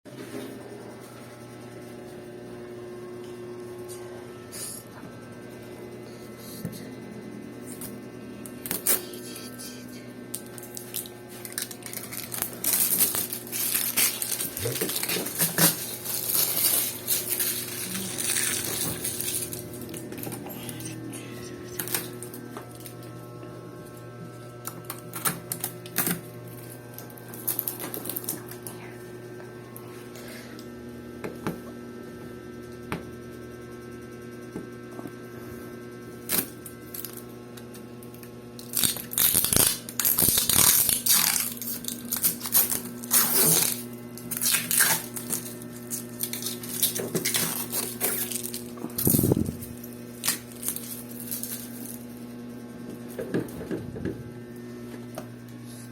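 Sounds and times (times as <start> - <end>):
steady low hum: 0.2 - 55.9
packaging rustling and scraping: 10.4 - 23.1, 38.6 - 52.1.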